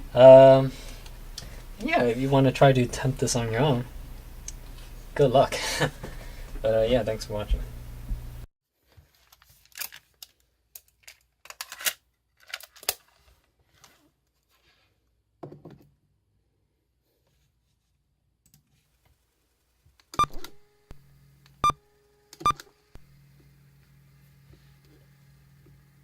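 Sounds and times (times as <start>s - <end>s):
low steady hum: 0.0s - 8.5s.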